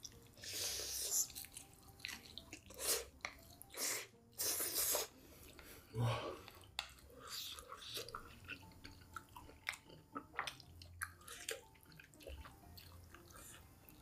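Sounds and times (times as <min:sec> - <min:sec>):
chewing with wet mouth clicks: 0:01.1 - 0:03.8, 0:06.5 - 0:14.0.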